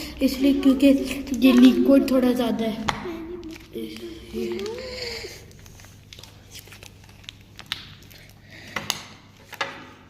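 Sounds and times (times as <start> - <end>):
wet slime squelching: 0.0 - 10.0.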